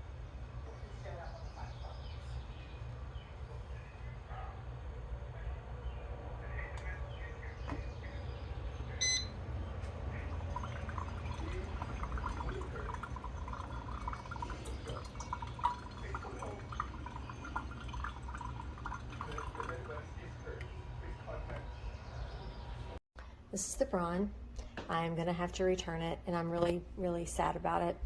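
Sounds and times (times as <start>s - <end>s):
low steady hum: 0.0s - 28.0s
coffee maker beep: 8.9s - 9.4s, 10.2s - 19.9s
coffee maker gurgling and dripping: 9.8s - 21.6s.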